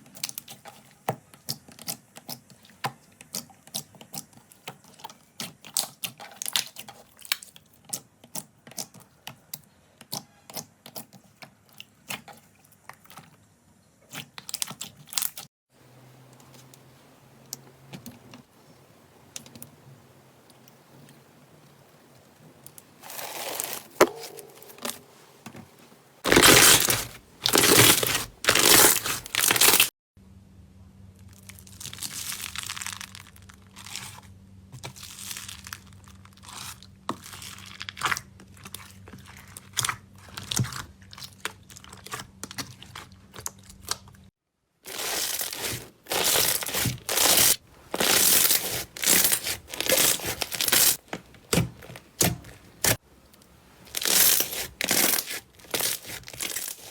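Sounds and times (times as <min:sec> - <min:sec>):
slime crackling and popping: 0:26.2 - 0:29.9, 0:31.4 - 0:34.2, 0:44.9 - 0:53.0, 0:53.9 - 0:56.9.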